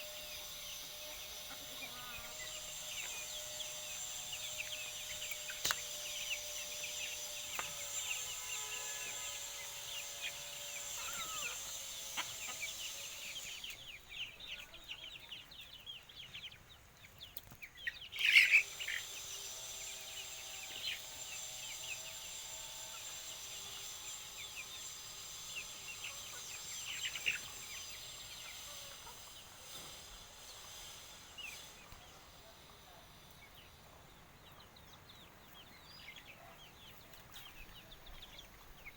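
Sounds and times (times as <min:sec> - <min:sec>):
chicken squawk: 0:00.0 - 0:13.8, 0:25.6 - 0:30.0
chicken calling: 0:00.0 - 0:15.8, 0:17.9 - 0:32.0
chicks peeping: 0:00.0 - 0:38.9.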